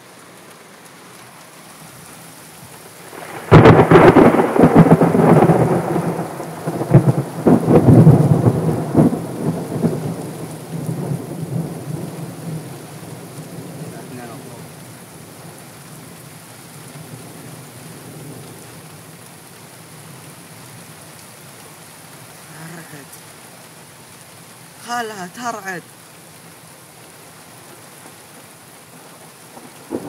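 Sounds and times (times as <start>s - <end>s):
steady rain: 0.0s - 30.0s
thunderclap with rumbling: 3.1s - 14.7s, 29.6s - 30.0s.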